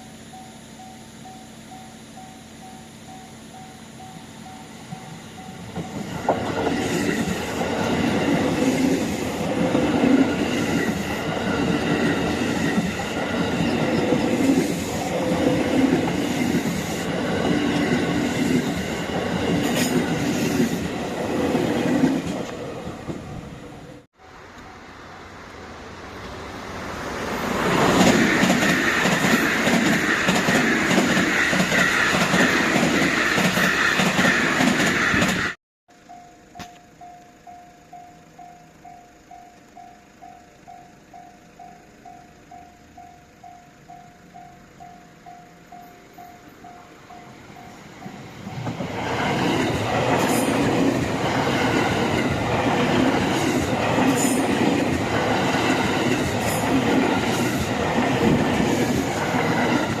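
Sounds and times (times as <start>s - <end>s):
train rushing past: 4.5s - 35.6s, 44.3s - 60.0s
train wheels clattering over rail joints: 27.7s - 35.6s.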